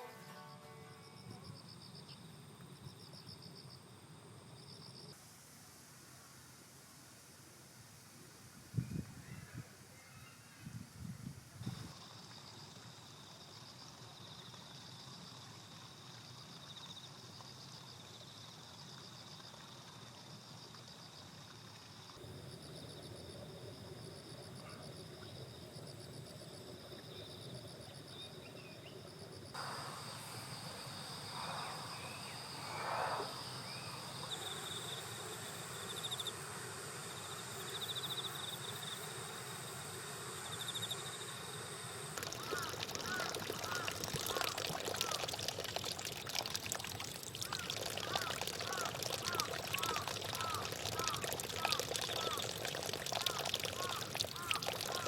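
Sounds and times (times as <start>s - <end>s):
insects chirring in trills: 0.0s - 5.5s, 8.6s - 55.0s.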